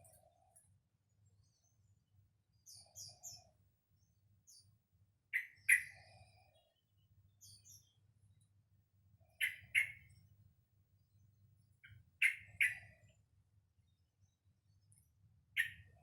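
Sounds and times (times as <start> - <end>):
young bird chirping song: 5.3 - 6.7, 9.4 - 10.2, 11.8 - 13.0, 15.6 - 16.0.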